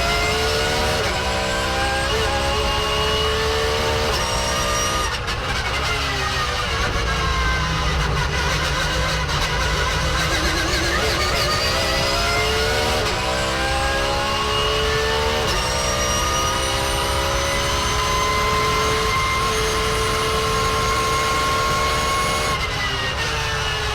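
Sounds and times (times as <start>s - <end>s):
race car engine at full throttle: 0.0s - 23.9s
gear whine: 5.6s - 13.3s.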